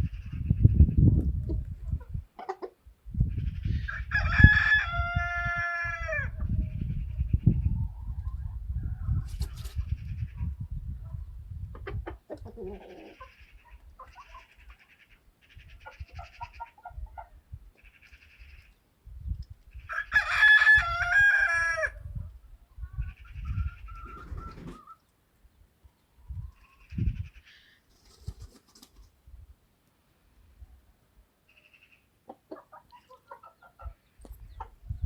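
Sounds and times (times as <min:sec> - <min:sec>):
chickens clucking: 0:00.0 - 0:04.1, 0:06.2 - 0:18.8, 0:21.4 - 0:25.2, 0:25.9 - 0:29.1, 0:31.5 - 0:35.0
rooster crowing: 0:03.9 - 0:06.3, 0:19.9 - 0:22.0.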